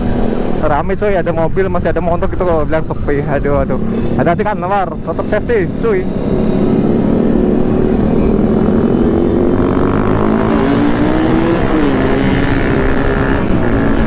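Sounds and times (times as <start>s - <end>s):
motorcycle engine running: 3.6s - 14.0s.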